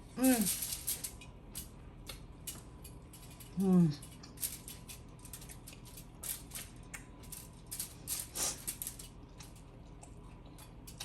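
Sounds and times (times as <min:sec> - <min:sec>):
chewing a juicy sandwich: 0:09.3 - 0:11.0.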